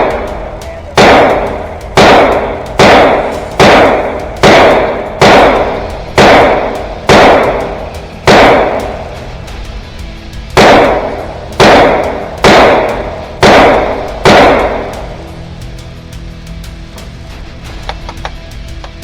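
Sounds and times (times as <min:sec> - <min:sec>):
gunshots with long echo: 0:00.0 - 0:15.6.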